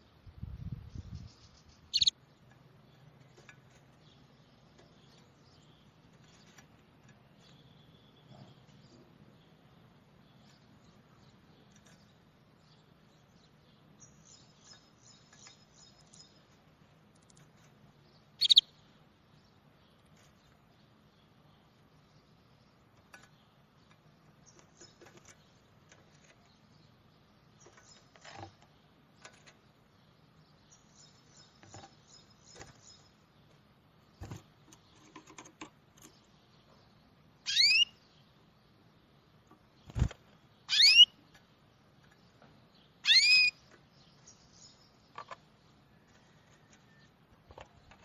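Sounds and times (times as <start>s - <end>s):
birds chipping and twittering: 0.0s - 48.0s
loud rising whistled bird calls: 1.9s - 2.1s, 37.5s - 37.9s, 40.7s - 41.2s, 43.0s - 43.6s.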